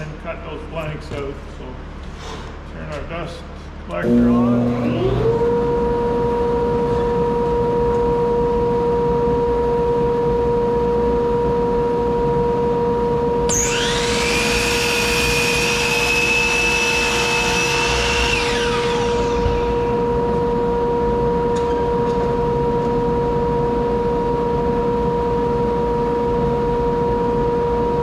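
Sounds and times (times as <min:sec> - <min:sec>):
dust collector humming: 0:03.9 - 0:07.8, 0:13.5 - 0:21.5
electric power saw whining: 0:04.0 - 0:07.2, 0:13.5 - 0:22.3.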